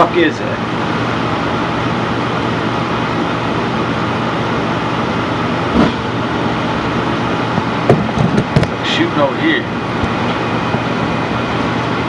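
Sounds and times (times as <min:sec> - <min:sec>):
furnace burner rumble and hum: 0:00.0 - 0:12.0
furnace bump: 0:05.7 - 0:06.2.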